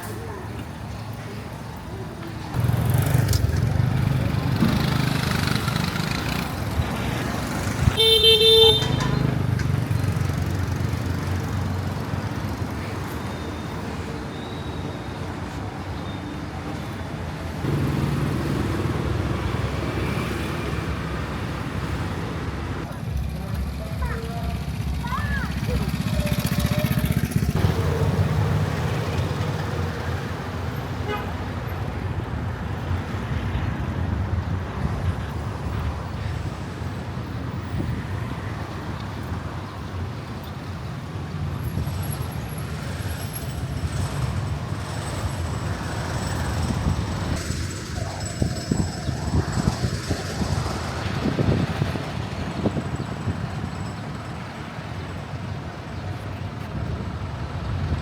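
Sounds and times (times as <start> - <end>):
traffic engines rumbling: 0.0 - 58.0
vehicle horn toot: 7.9 - 9.4, 31.0 - 31.4.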